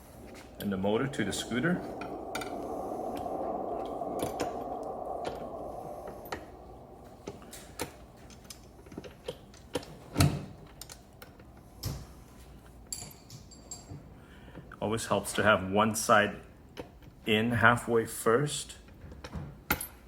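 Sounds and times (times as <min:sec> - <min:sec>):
rushing noise: 0:00.0 - 0:09.9.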